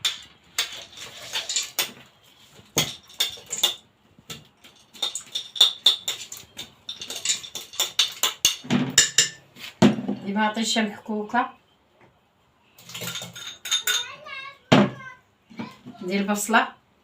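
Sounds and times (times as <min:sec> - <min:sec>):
dishes clinking and knocking: 0:00.0 - 0:10.3, 0:12.8 - 0:15.0.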